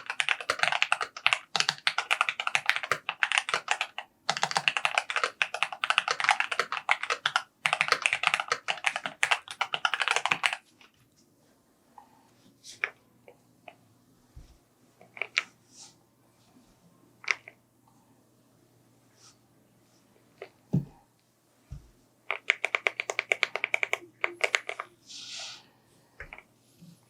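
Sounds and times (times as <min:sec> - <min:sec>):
mechanical keyboard typing: 0:00.0 - 0:10.6, 0:22.3 - 0:24.9.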